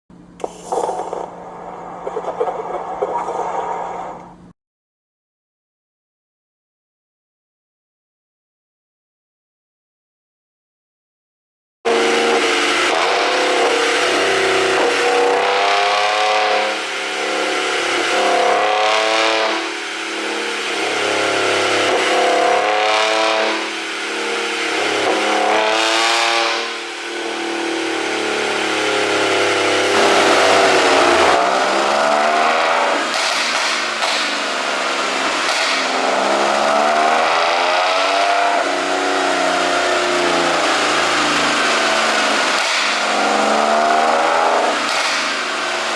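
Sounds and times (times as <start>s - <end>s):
car engine revving: 11.9s - 45.9s
exhaust pops and crackles: 29.9s - 36.7s.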